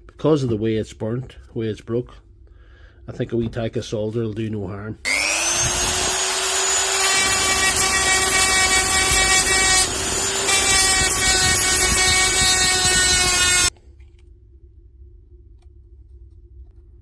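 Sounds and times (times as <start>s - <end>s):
electric tool motor whining: 5.1s - 13.7s.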